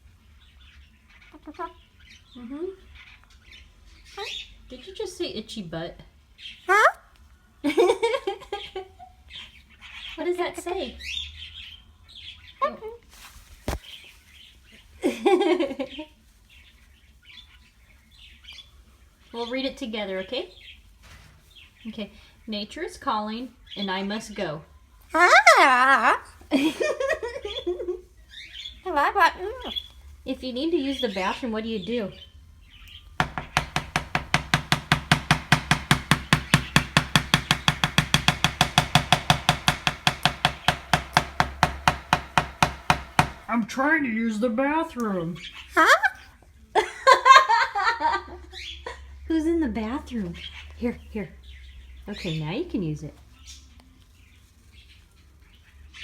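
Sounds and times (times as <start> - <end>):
cockatoo chirping: 25.1 - 26.4, 32.9 - 43.5
cockatoo muttering: 25.1 - 26.4.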